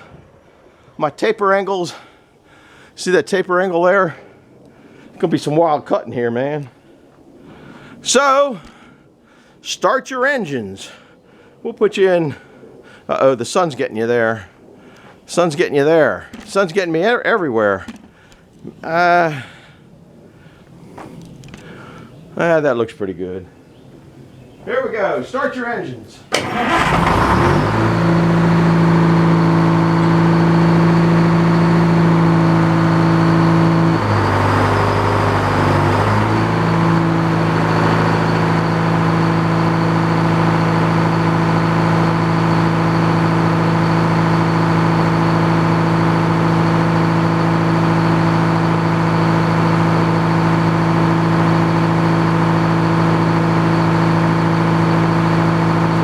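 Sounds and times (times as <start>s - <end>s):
sawmill engine running: 26.3s - 56.0s.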